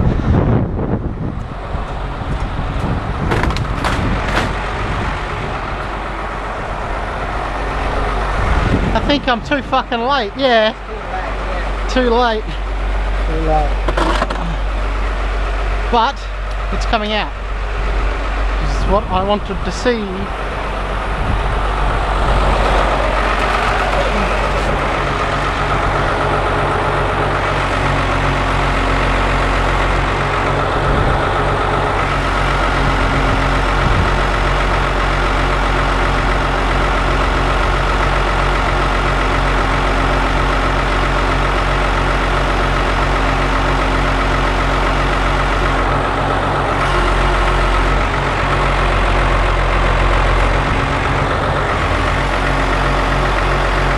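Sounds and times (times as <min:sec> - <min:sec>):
heavy engine idling: 0:00.0 - 0:53.9.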